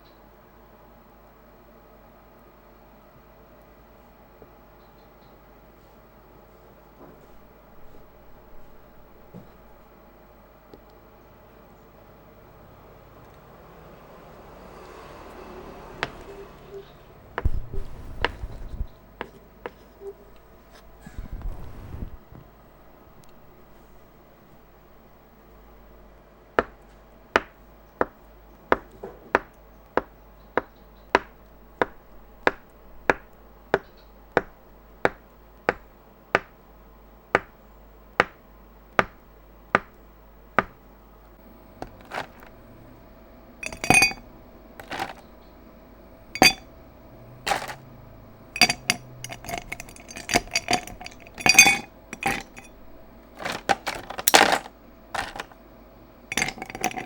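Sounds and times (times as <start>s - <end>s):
utensil clinking against glass: 41.8s - 42.5s, 43.6s - 44.2s, 44.8s - 45.2s, 46.4s - 46.6s, 47.5s - 47.8s, 48.6s - 55.5s, 56.3s - 57.0s.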